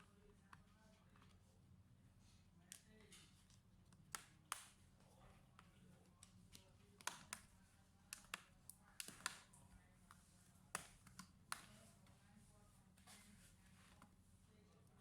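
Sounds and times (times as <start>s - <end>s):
faint clicks and taps of tools: 2.6s - 12.2s.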